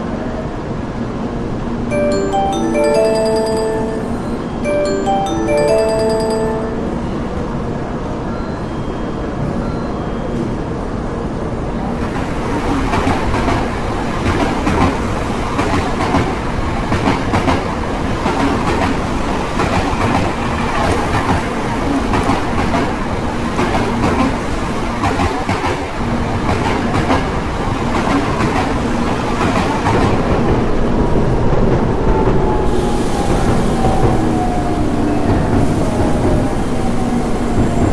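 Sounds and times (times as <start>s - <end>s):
train rumbling: 10.4s - 37.9s.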